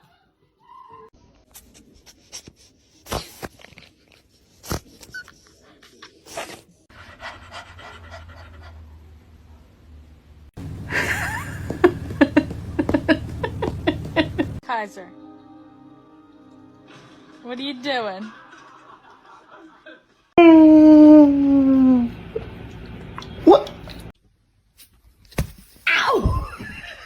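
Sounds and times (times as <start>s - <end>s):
dog panting: 6.9s - 9.1s.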